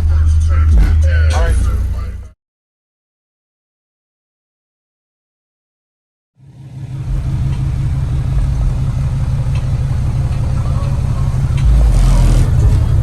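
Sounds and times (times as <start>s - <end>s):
loud deep bass from subwoofers: 0.0s - 2.3s, 6.9s - 13.0s.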